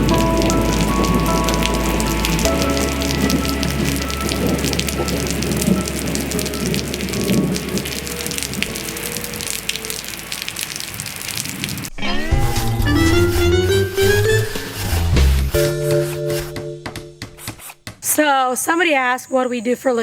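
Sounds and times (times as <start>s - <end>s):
soft background music: 0.0s - 8.9s
rain falling on a surface: 0.0s - 11.9s.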